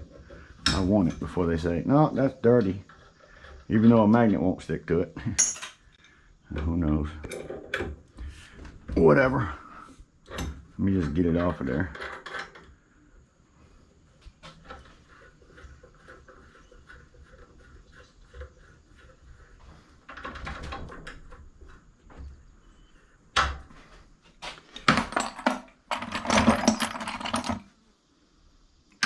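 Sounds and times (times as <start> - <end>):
metal scraping on metal: 14.4 - 21.0.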